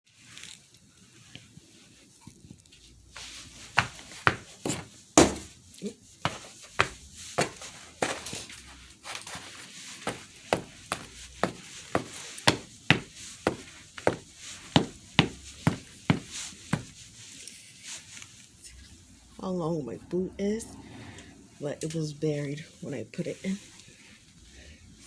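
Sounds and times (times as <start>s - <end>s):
boots crunching through snow: 3.2s - 5.5s, 6.3s - 17.0s.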